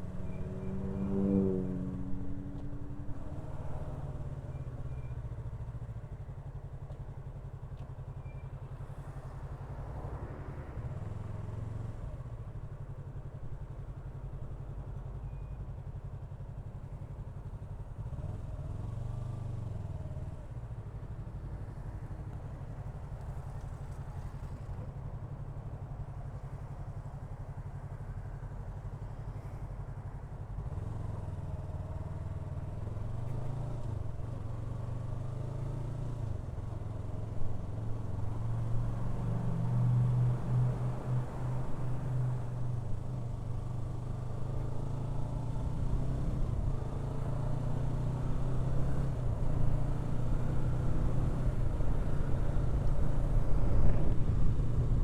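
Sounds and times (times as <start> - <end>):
motorcycle engine rumbling: 0.0 - 6.7, 48.3 - 55.0
wind noise: 53.0 - 55.0.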